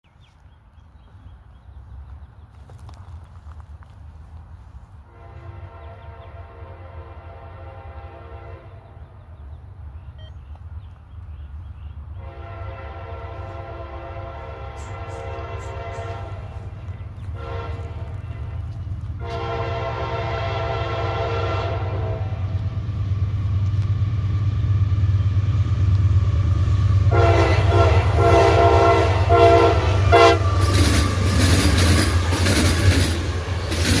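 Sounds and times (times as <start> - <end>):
locomotive engine rumbling: 1.4 - 34.0
locomotive air horn blasts: 5.0 - 9.0, 12.2 - 16.7, 17.3 - 18.5, 19.2 - 22.6, 27.1 - 30.7
train wheels on rails: 10.5 - 34.0.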